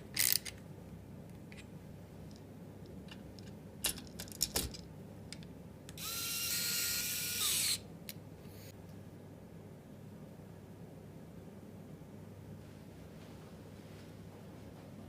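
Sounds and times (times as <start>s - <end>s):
parts clicking and tapping: 1.3s - 6.0s
electric screwdriver motor whine: 6.0s - 7.8s.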